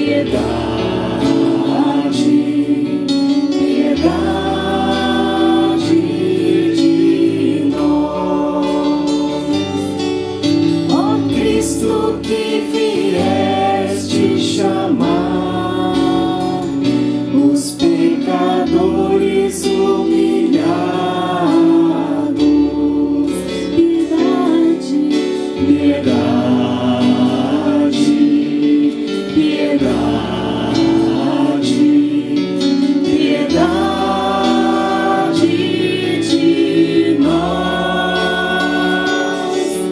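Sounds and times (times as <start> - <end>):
choir singing a hymn: 0.0 - 39.9
instrumental long bass notes: 0.0 - 39.9.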